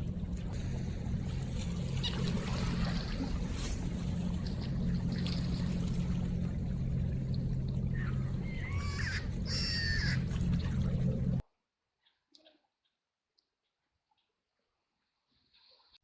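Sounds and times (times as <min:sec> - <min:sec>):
low hum: 0:00.0 - 0:11.4
river water running: 0:00.0 - 0:11.4
bird calling: 0:07.9 - 0:11.1.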